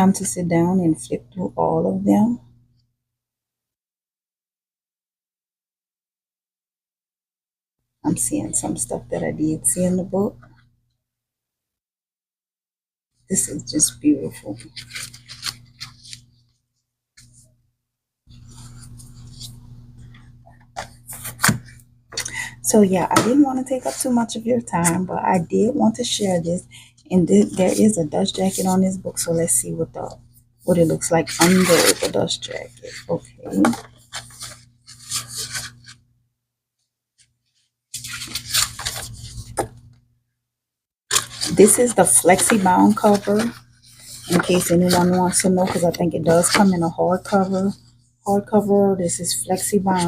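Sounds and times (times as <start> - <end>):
postcards rustling and scraping: 14.3 - 16.6, 17.2 - 17.4, 18.3 - 22.3, 27.3 - 29.4, 30.0 - 36.0, 37.2 - 39.9, 41.1 - 48.0
electrical hum: 41.2 - 50.0.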